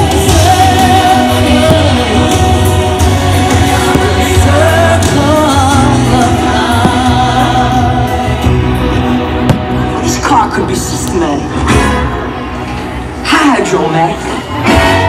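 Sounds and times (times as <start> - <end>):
steady bass line: 0.0 - 13.3
loud music with singing: 0.0 - 15.0.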